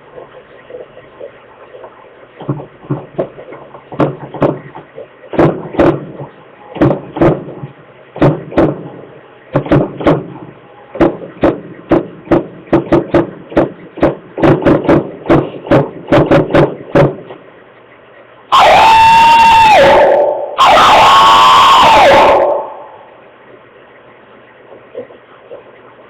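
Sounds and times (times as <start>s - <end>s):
sharp knocks: 2.4s - 17.4s.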